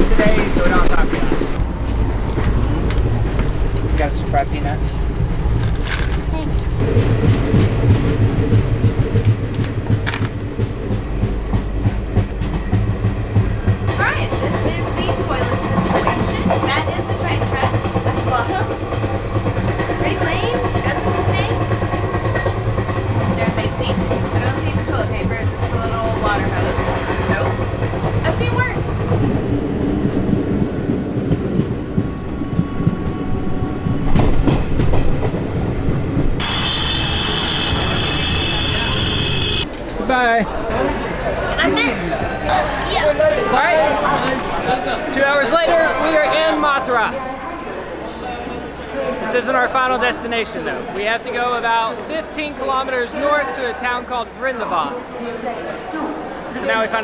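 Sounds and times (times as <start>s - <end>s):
train wheels rumbling: 0.0s - 46.7s
rattles and clicks: 5.5s - 6.8s.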